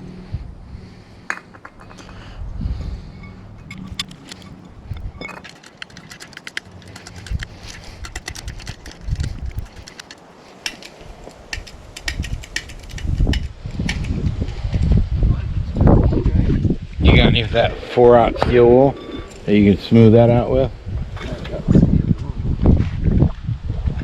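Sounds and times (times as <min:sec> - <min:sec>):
light clicks and clinks on metal: 0:01.3 - 0:02.4, 0:03.0 - 0:13.5.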